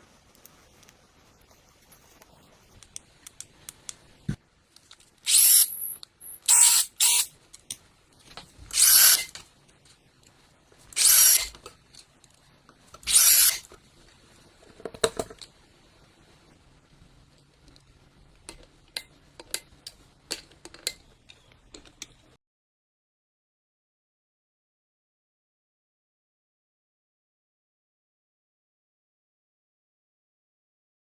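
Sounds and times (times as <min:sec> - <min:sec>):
cordless drill bursts: 0:05.3 - 0:07.3, 0:08.7 - 0:09.3, 0:11.0 - 0:11.5, 0:13.1 - 0:13.6.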